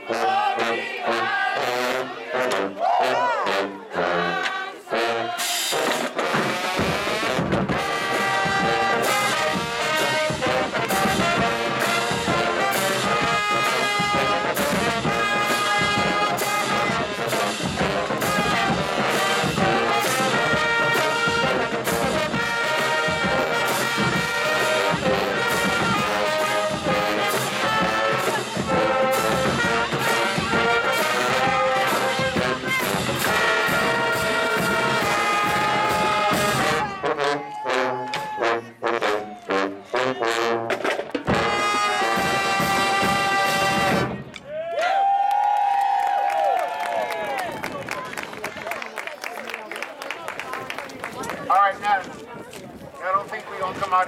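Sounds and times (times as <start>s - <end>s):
brass band playing: 0.0s - 44.4s
drumline beat: 5.4s - 37.2s, 40.5s - 44.4s.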